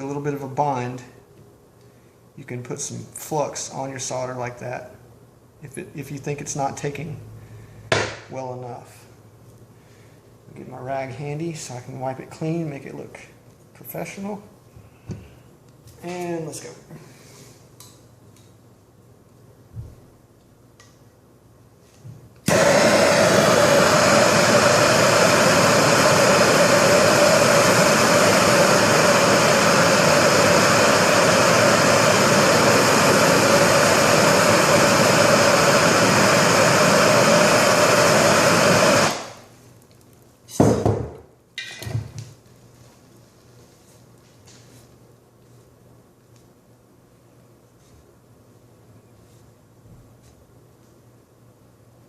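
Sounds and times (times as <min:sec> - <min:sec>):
gas torch roaring: 0:22.4 - 0:39.6.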